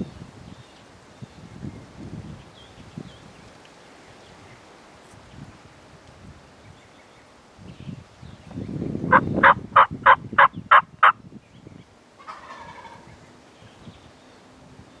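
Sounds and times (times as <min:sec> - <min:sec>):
turkey yelping: 0:09.1 - 0:09.9, 0:12.2 - 0:13.1.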